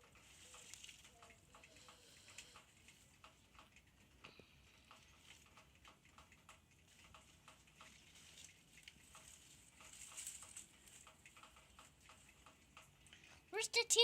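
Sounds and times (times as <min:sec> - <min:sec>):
faint regular ticking: 0:00.0 - 0:14.0.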